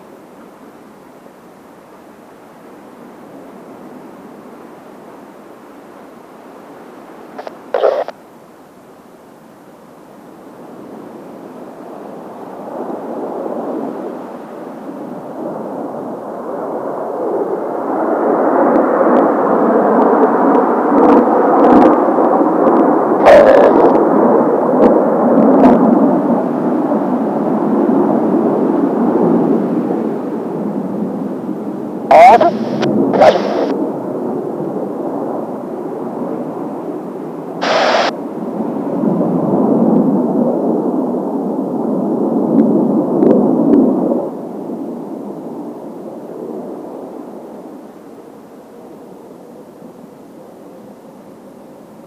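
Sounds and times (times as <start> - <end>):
jets flying past: 7.4 - 8.1, 37.6 - 38.1
jet aircraft engine rumble: 29.9 - 38.1
burst of hiss: 37.6 - 38.1.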